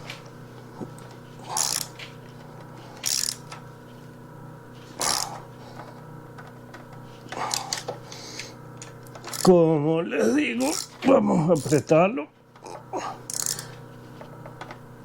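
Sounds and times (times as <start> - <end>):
steady low hum: 0.0 - 15.0
ratchet wrench clicking: 1.5 - 1.9, 3.0 - 3.6, 5.0 - 5.4, 9.3 - 9.5, 10.6 - 11.0, 13.3 - 13.7.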